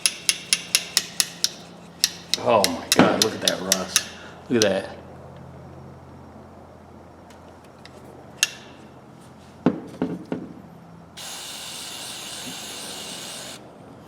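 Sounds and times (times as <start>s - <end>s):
aerosol spray can hissing: 11.2s - 13.6s.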